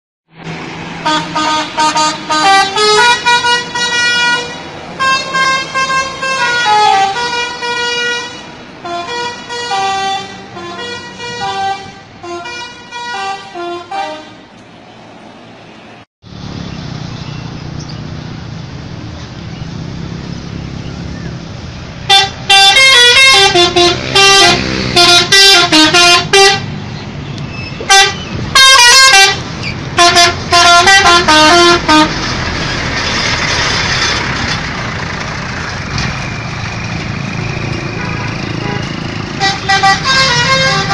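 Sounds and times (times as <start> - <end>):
multi-tone air horn tunes: 1.0 - 14.4, 22.1 - 26.7, 27.8 - 29.4, 30.0 - 32.2, 37.8 - 40.9
low engine rumble: 29.4 - 40.9.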